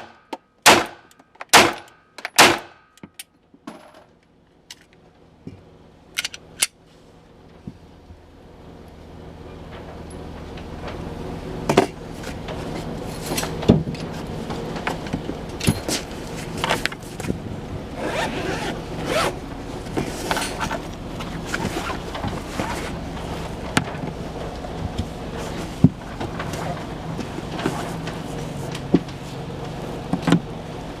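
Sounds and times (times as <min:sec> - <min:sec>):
gear scraping and rustling: 0:09.4 - 0:31.0.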